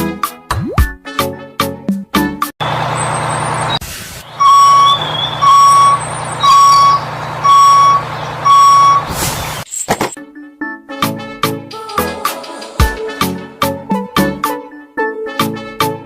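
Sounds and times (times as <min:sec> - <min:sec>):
engine rumble: 0:02.6 - 0:09.6
truck reversing alarm beeping: 0:02.6 - 0:09.6
short hiss: 0:09.1 - 0:09.6.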